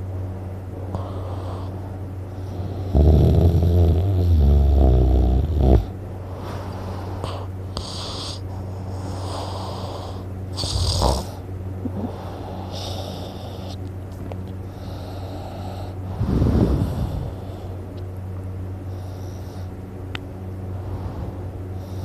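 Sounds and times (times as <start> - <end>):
noisy breathing: 0.7 - 13.9, 14.5 - 18.0, 18.7 - 22.0
man snoring: 2.4 - 6.0, 9.0 - 13.8.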